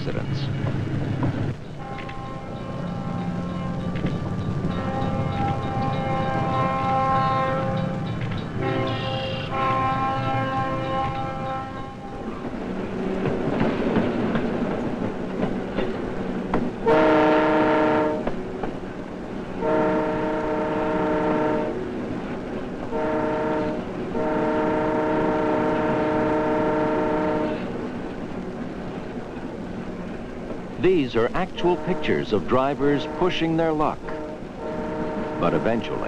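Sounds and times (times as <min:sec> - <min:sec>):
train rumbling past: 0:00.0 - 0:36.0
locomotive air horn: 0:01.8 - 0:03.8, 0:04.7 - 0:07.9, 0:08.6 - 0:12.2, 0:16.8 - 0:18.3, 0:19.6 - 0:21.8, 0:22.9 - 0:27.7, 0:31.6 - 0:32.3, 0:32.9 - 0:33.4, 0:34.1 - 0:36.0.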